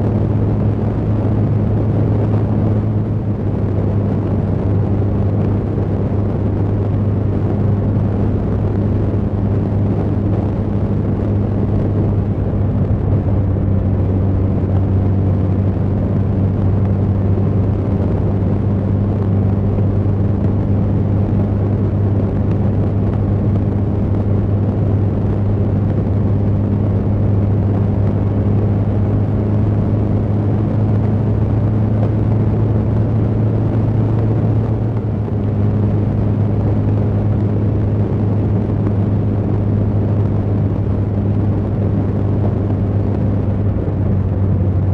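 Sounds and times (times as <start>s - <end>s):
motorcycle engine cruising: 0.0s - 44.9s
road noise: 0.0s - 44.9s
rushing wind: 0.0s - 44.9s.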